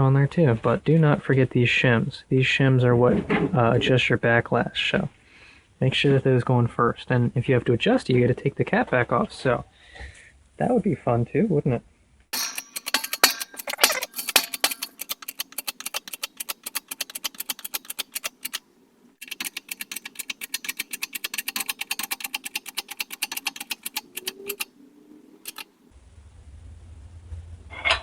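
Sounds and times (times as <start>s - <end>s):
rapid metal clicking: 12.3s - 18.6s, 19.2s - 24.8s, 25.4s - 25.8s.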